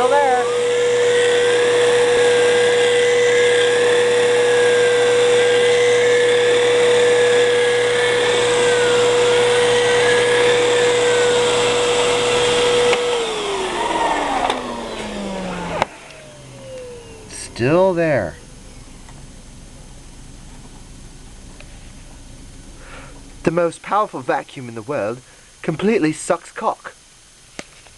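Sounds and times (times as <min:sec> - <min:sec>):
vacuum cleaner motor whine: 0:00.0 - 0:21.0.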